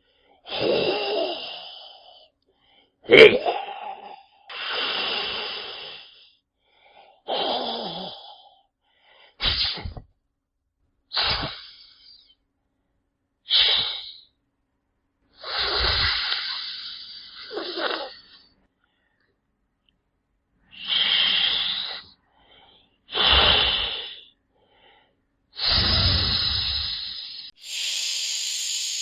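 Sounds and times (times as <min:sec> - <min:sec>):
snake hissing: 0:25.7 - 0:29.0.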